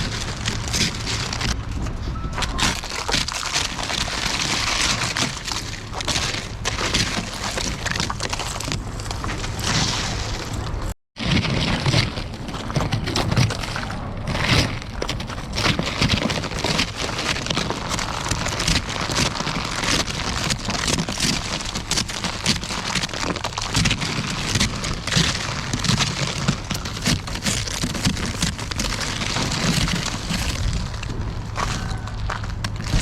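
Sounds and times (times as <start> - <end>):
low rumble: 23.5 - 33.0.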